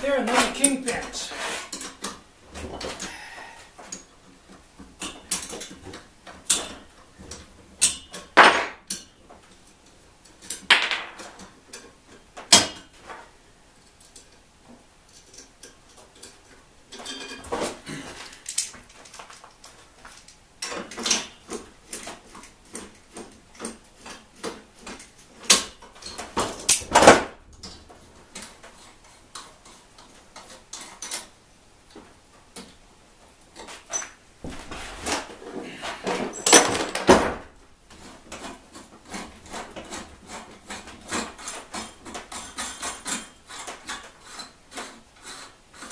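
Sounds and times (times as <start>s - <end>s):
metal tools clinking: 15.1s - 17.5s, 36.2s - 37.0s.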